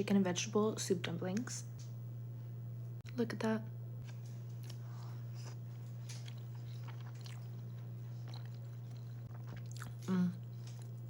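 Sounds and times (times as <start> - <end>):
low hum: 0.0 - 11.0
chewing with wet mouth clicks: 4.6 - 11.0.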